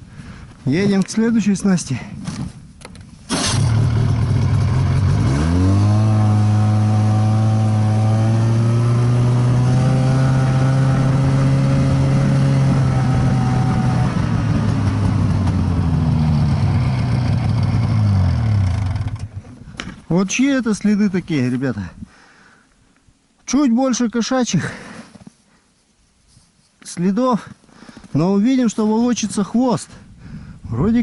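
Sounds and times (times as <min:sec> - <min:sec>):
snowmobile engine: 0:03.3 - 0:19.4.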